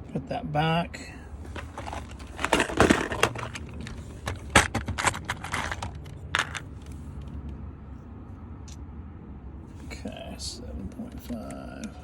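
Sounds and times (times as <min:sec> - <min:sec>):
plastic fuses clicking and rattling: 0:01.4 - 0:07.4.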